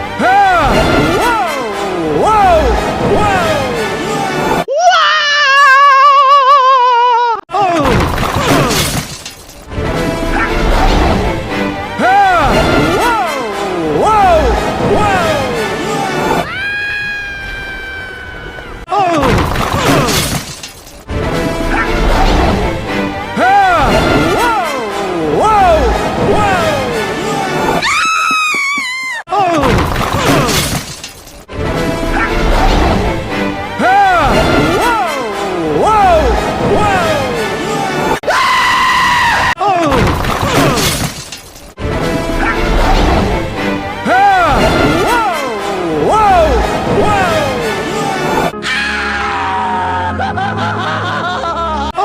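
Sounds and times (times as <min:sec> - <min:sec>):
background music: 0:00.0 - 0:04.7, 0:07.6 - 0:17.1, 0:19.0 - 0:52.0
high cartoon scream: 0:04.7 - 0:07.8, 0:16.4 - 0:19.3, 0:27.8 - 0:29.6, 0:38.2 - 0:39.7, 0:48.6 - 0:50.2.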